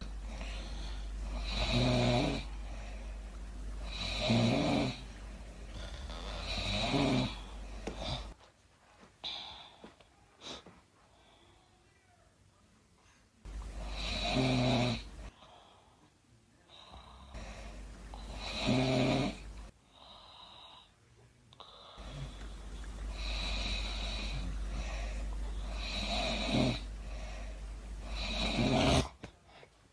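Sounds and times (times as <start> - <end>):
woman snoring: 0.0 - 3.0, 3.8 - 8.4, 13.5 - 15.3, 16.9 - 20.9, 21.6 - 29.2
quiet breathing: 0.0 - 29.9.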